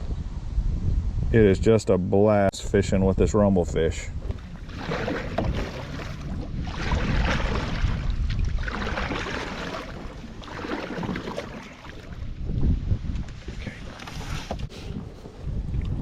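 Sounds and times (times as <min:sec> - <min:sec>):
wind buffeting microphone: 0:00.0 - 0:16.0
water sloshing against kayak: 0:04.1 - 0:16.0.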